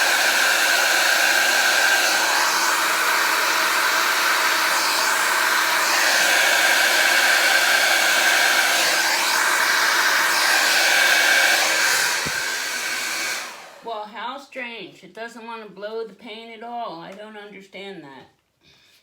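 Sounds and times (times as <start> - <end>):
hair dryer running: 0.0 - 14.0.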